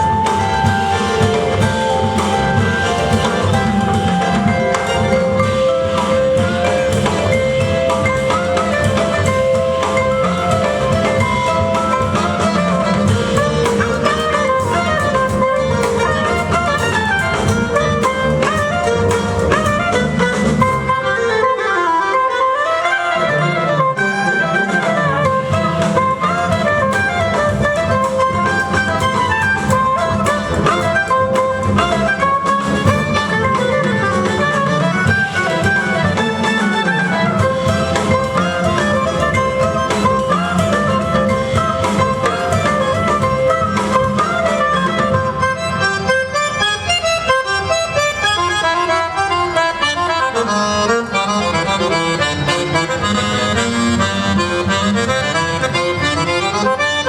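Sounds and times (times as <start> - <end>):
reedy instrument playing quick melody: 0.0 - 57.0.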